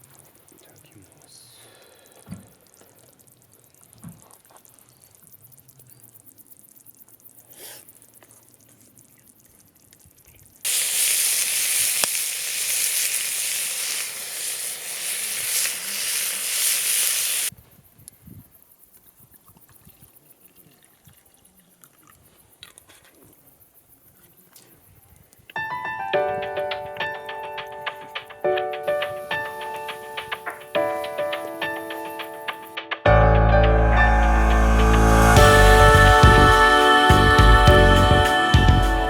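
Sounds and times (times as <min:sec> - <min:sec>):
loud sizzling hiss: 0:10.7 - 0:17.5, 0:25.8 - 0:33.0, 0:34.2 - 0:39.0.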